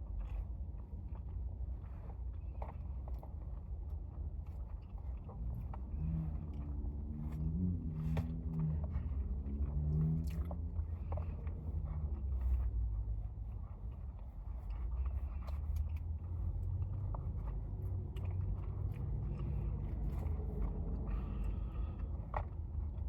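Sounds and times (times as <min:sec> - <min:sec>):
low rumble: 0:00.0 - 0:23.0
chewing noodles: 0:10.0 - 0:10.7.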